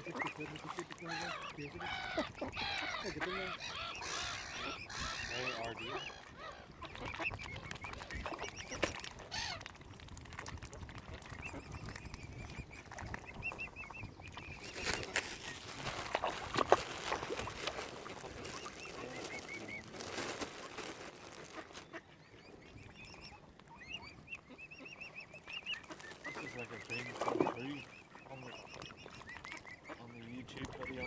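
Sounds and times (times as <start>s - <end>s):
cygnets peeping: 0.0s - 9.6s, 10.8s - 31.0s
rustling: 14.6s - 21.9s, 25.8s - 27.9s.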